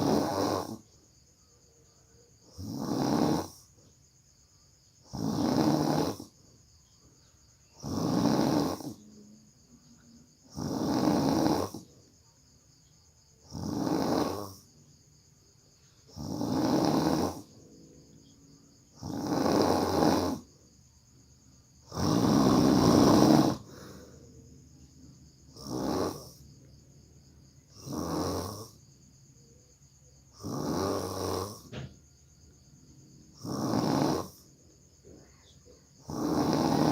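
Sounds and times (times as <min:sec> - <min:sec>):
person snoring heavily: 0:00.0 - 0:00.9, 0:02.5 - 0:03.7, 0:05.0 - 0:06.4, 0:07.7 - 0:09.1, 0:10.4 - 0:11.9, 0:13.4 - 0:14.7, 0:16.1 - 0:17.6, 0:18.9 - 0:20.6, 0:21.8 - 0:24.3, 0:25.5 - 0:26.4, 0:27.7 - 0:28.8, 0:30.3 - 0:32.0, 0:33.3 - 0:36.9.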